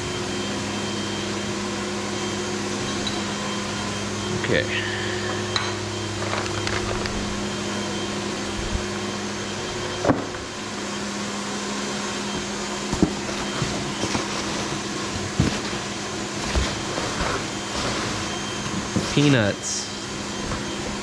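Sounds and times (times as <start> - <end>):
machine-shop hum: 0.0 - 21.0
low held tones: 2.2 - 11.0.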